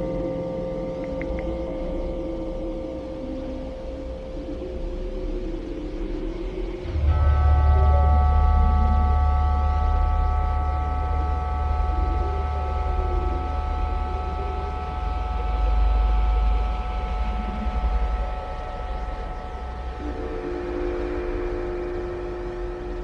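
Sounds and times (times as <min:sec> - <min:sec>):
deep rumbling drone: 0:00.0 - 0:23.0.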